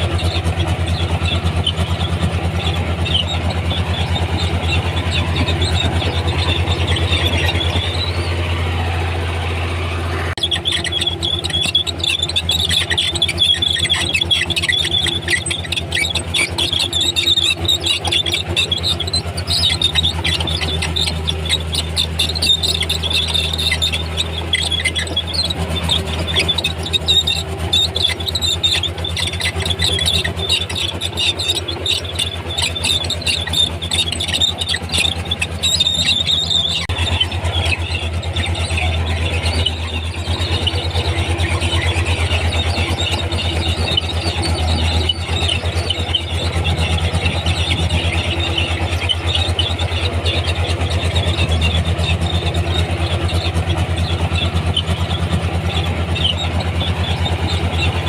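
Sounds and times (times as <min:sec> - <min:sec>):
bulldozer diesel engine running: 0:00.0 - 0:58.0
rattling and squeaking: 0:00.0 - 0:58.0
steel tracks squealing: 0:00.0 - 0:58.0.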